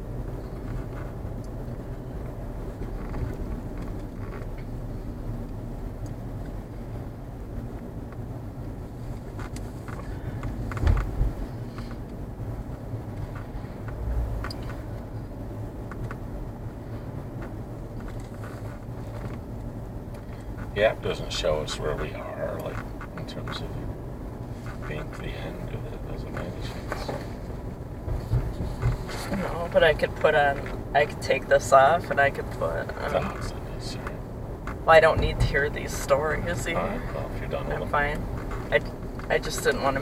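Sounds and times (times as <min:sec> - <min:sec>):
car cabin road rumble: 0:00.0 - 0:40.0
low thumps: 0:10.6 - 0:11.5.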